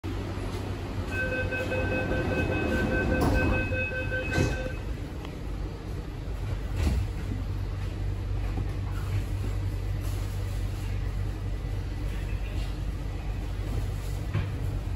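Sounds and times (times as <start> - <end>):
train humming: 0.0 - 14.9
door-closing warning beeps: 1.1 - 4.9
train doors knocking shut: 1.7 - 4.9.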